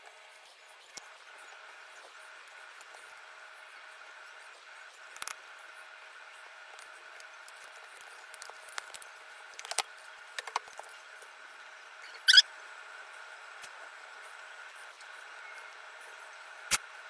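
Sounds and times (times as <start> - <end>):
brief loud squeak: 12.0 - 12.4.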